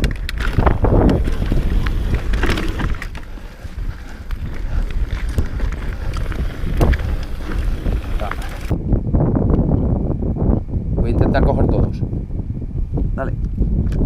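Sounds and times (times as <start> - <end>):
bike knocks and rattles: 0.0 - 8.8
wind buffeting microphone: 0.0 - 14.0.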